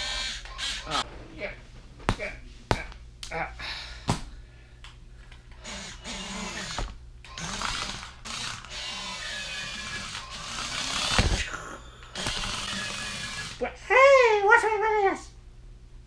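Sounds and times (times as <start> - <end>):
toy electric motor whirring: 0.0 - 1.0, 5.5 - 13.6.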